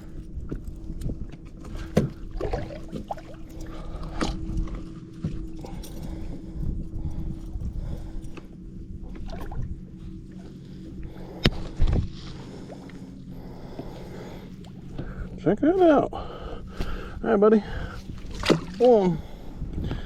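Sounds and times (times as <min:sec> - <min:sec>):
low rumble: 0:00.0 - 0:20.0
knocks and rattles on kayak: 0:01.2 - 0:03.2.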